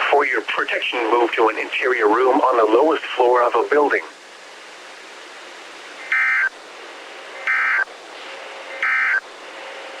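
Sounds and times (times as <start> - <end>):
steady radio hiss: 0.0 - 10.0
digital data tone bursts: 6.1 - 6.5, 7.4 - 7.9, 8.8 - 9.2.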